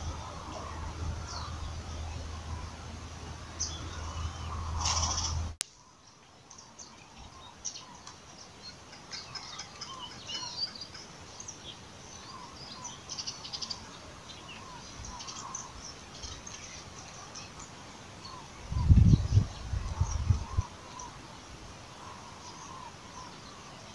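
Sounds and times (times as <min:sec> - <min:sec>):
birds chirping: 0:00.0 - 0:23.9
bird trills: 0:08.7 - 0:11.6.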